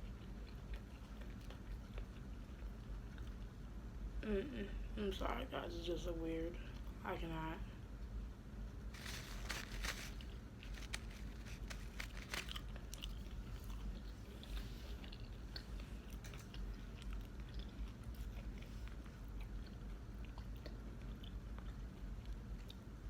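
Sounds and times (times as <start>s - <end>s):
person chewing food: 0.0s - 3.7s, 8.8s - 23.0s.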